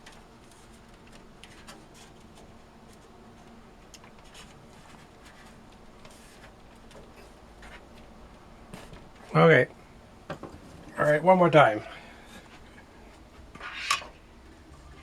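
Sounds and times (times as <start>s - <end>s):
light clicks and scrapes: 0.0s - 8.1s.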